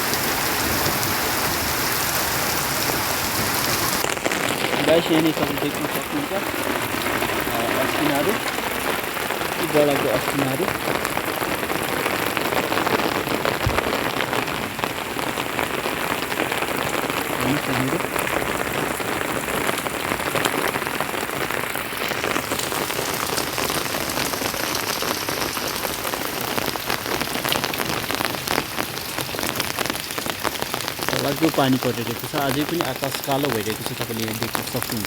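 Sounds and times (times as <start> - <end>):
hailstones ticking: 0.0 - 35.0
heavy rain hissing: 0.0 - 35.0.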